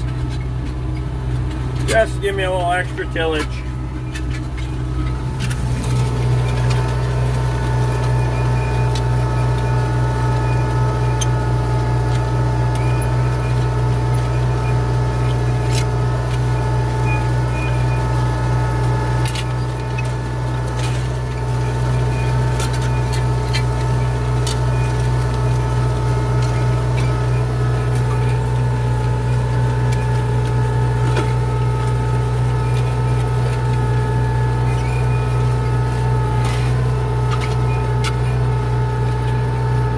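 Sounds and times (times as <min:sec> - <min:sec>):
tractor engine droning: 0:00.0 - 0:39.9.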